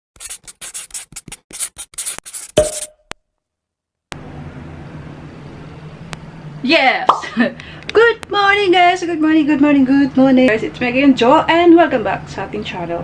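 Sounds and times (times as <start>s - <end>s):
short scratchy strokes: 0.2s - 2.9s.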